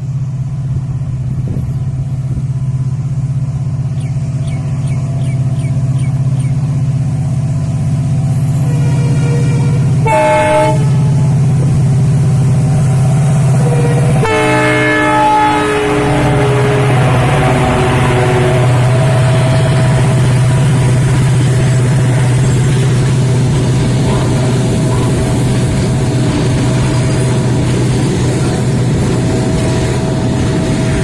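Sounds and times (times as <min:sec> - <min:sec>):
locomotive engine droning: 0:00.0 - 0:31.0
train horn: 0:08.3 - 0:11.6, 0:13.1 - 0:27.4.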